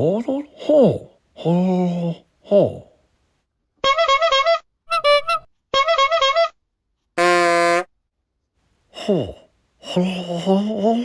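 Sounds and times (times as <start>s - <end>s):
toy honking reedy tone: 3.8s - 6.6s, 7.2s - 7.9s.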